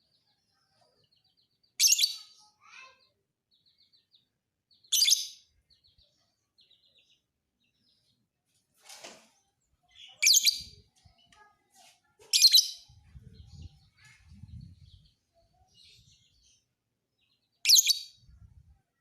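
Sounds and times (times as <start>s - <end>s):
faint bird twittering: 9.4s - 16.6s, 17.6s - 19.0s
lovebird shrill chirping: 10.2s - 10.8s, 17.6s - 18.2s.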